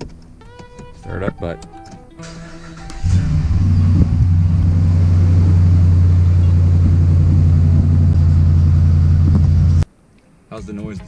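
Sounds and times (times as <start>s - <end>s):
pickup truck engine idling: 2.2s - 9.8s.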